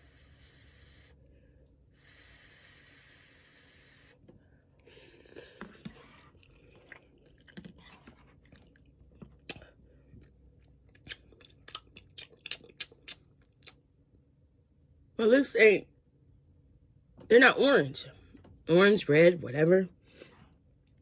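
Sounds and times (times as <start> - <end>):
person chewing noodles: 4.8 - 13.8.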